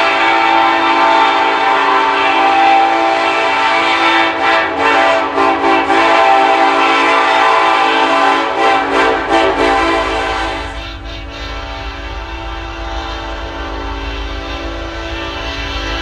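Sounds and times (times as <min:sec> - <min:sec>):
locomotive air horn: 0:00.0 - 0:16.0
passing train rumble: 0:00.0 - 0:16.0.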